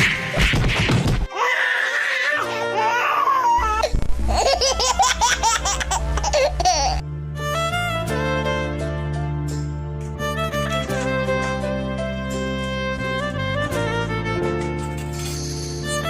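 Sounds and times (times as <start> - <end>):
background music: 0.0 - 16.0
high-pitched laughing: 3.5 - 7.0.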